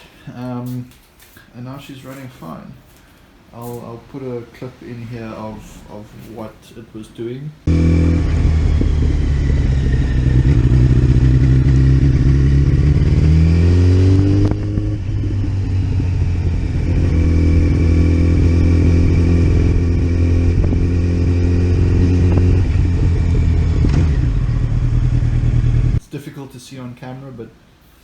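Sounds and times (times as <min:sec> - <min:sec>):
motorcycle engine running: 0:07.7 - 0:26.0.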